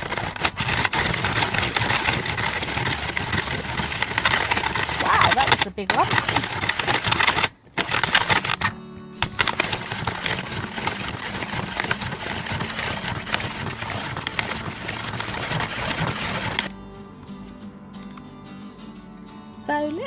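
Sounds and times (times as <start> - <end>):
toy ice shaver grinding ice: 0.0 - 16.7
faint background music: 7.4 - 20.0.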